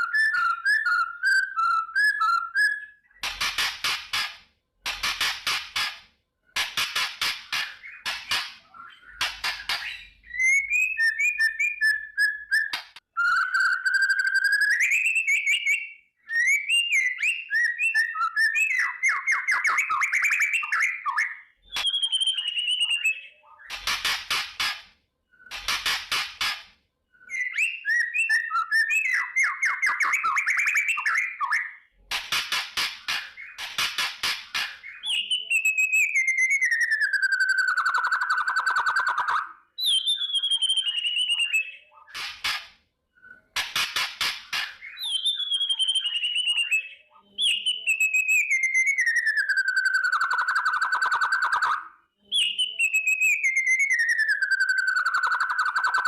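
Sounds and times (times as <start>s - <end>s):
bird whistled notes: 34.8s - 42.1s, 44.8s - 56.0s.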